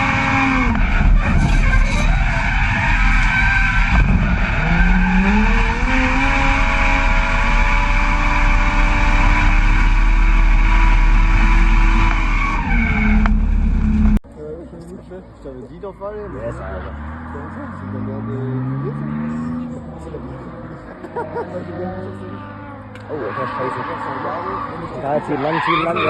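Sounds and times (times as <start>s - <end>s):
car engine revving hard: 0.0s - 14.2s.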